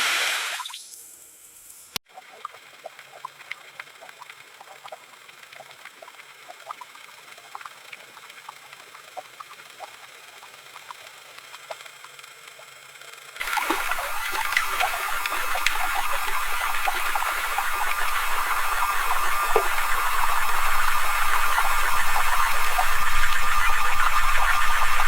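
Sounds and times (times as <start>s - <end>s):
loud hiss of water: 0.0s - 0.9s, 13.4s - 25.0s
water lapping against hull: 2.1s - 12.1s, 13.4s - 25.0s
small clicks and creaks: 2.3s - 13.5s.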